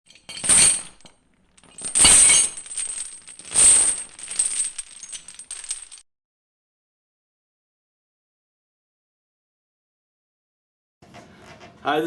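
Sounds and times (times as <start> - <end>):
metal crashing and jingling: 0.1 - 6.0.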